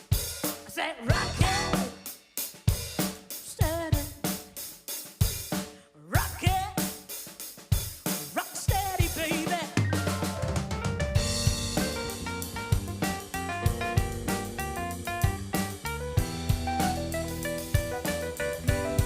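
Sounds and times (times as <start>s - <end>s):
funk band playing: 0.0s - 5.6s, 6.2s - 19.0s
drum kit groove: 0.0s - 19.0s
held bass notes: 1.1s - 1.9s, 10.0s - 19.0s
sliding pitched notes: 10.1s - 19.0s.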